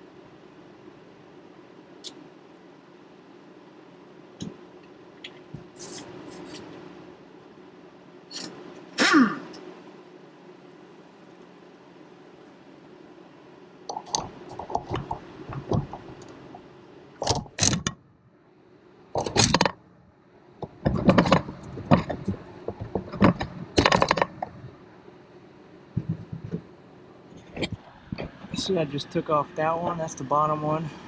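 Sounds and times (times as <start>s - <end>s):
metal rattles: 20.6s - 24.7s, 26.0s - 26.7s.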